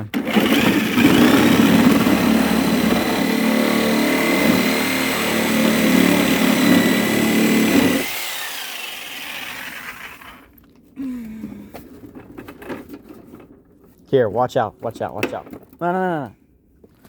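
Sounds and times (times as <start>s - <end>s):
power cutting tool whining: 0.1s - 10.5s.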